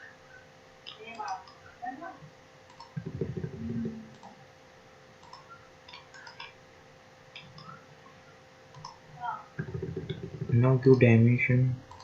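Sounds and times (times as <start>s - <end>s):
low electrical hum: 0.0s - 12.0s
computer mouse clicks: 0.9s - 1.6s, 2.7s - 4.4s, 5.2s - 6.6s, 7.4s - 7.8s, 8.7s - 9.0s
low rumble: 3.0s - 4.2s, 9.6s - 10.8s.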